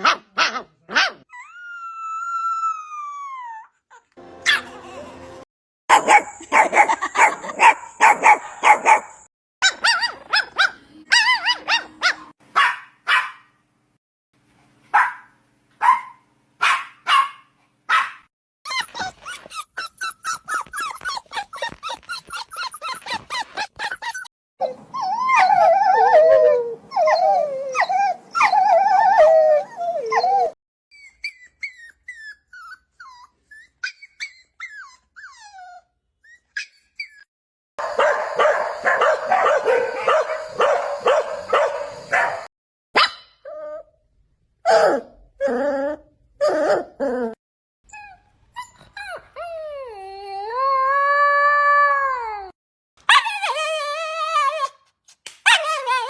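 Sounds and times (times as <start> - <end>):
dog yapping barks: 0.0 - 1.2, 4.4 - 4.7, 5.9 - 13.5, 14.9 - 19.3, 37.8 - 43.2, 53.0 - 53.6, 55.4 - 56.0
dog whining: 1.0 - 4.6, 18.7 - 42.5, 44.7 - 52.5
puppy whimpers and squeaks: 1.3 - 4.0, 18.7 - 26.2, 26.9 - 37.3, 43.0 - 44.0, 45.4 - 50.9.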